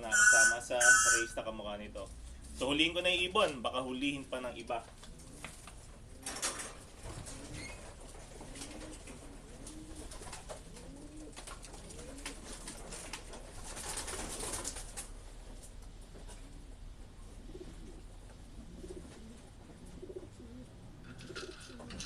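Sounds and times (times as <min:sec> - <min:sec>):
pigeons cooing: 0:00.0 - 0:01.4, 0:05.1 - 0:14.6, 0:16.2 - 0:22.0.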